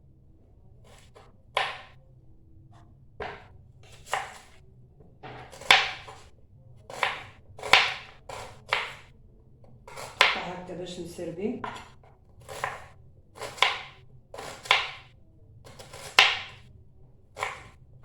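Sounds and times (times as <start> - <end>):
knife slicing on cutting board: 0.9 - 1.9, 3.2 - 4.6, 6.9 - 9.1, 9.9 - 10.4, 11.6 - 15.0.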